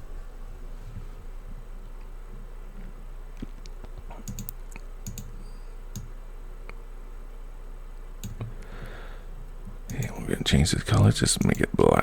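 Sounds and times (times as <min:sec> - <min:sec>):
low steady hum: 0:00.0 - 0:12.0
laptop keyboard keys tapping: 0:04.2 - 0:05.4, 0:08.2 - 0:08.5.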